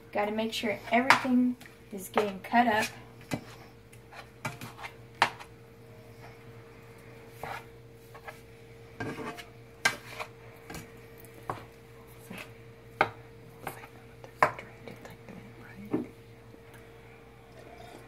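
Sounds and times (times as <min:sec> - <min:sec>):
steady low hum: 0:00.0 - 0:18.0
utensil scraping a frying pan: 0:02.0 - 0:05.5, 0:07.3 - 0:10.4.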